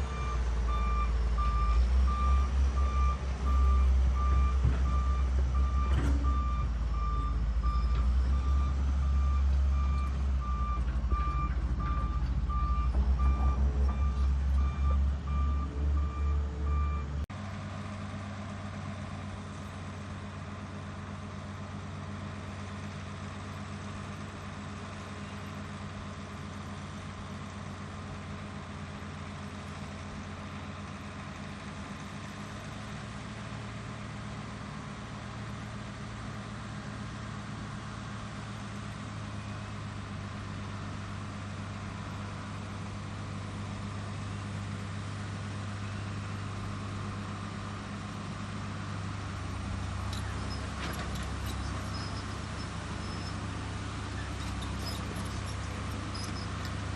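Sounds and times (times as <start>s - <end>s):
diesel engine running: 0.0s - 56.9s
reverse alarm beeping: 0.2s - 17.1s.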